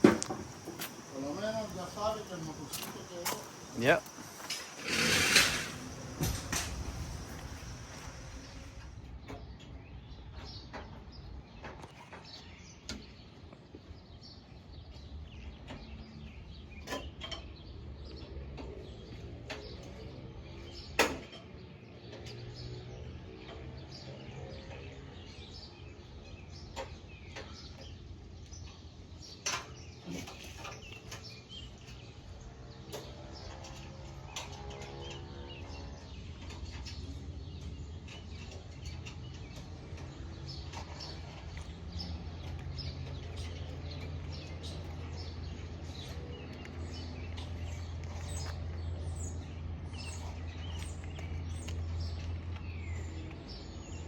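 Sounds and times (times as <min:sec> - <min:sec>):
steady low hum: 0:00.0 - 0:09.0
birds chirping: 0:00.0 - 0:54.0.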